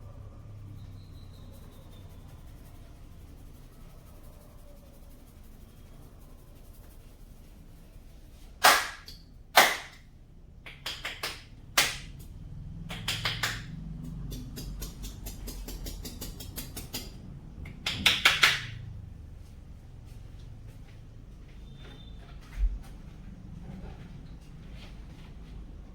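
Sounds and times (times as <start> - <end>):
massage smacks: 8.6 - 10.0.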